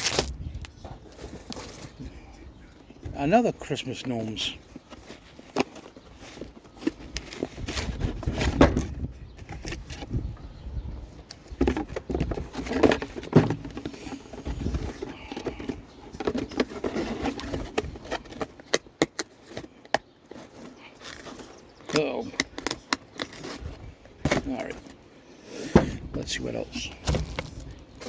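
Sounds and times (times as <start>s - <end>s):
packaging rustling: 0.0s - 0.4s, 26.5s - 28.0s.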